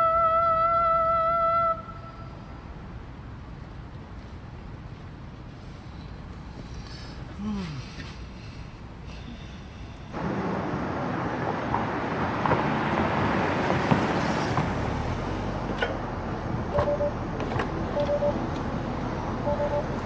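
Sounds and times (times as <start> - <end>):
street traffic: 0.0 - 20.0
short beeps: 16.7 - 17.2, 18.0 - 18.4, 19.4 - 20.0.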